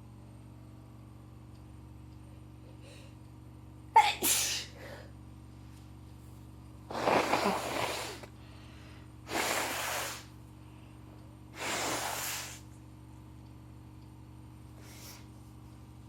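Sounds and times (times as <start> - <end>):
woman sneezing: 4.0 - 4.8
woman snorting through blocked nose: 6.9 - 8.3, 9.3 - 10.3, 11.6 - 12.6.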